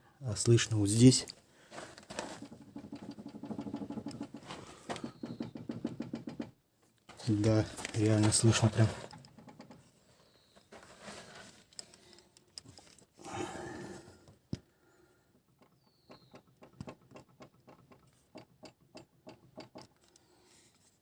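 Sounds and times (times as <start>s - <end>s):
rustling: 1.3s - 5.2s, 6.8s - 13.7s
car parts clicking and knocking: 2.1s - 10.0s, 15.3s - 20.3s.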